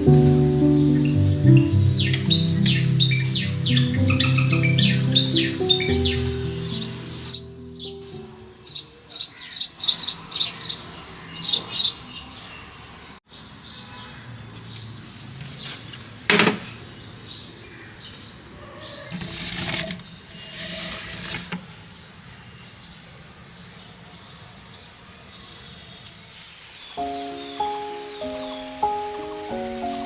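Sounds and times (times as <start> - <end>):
small birds chirping: 0.0 - 16.1, 16.7 - 30.0
rustling or scraping: 14.4 - 16.3, 19.1 - 21.9.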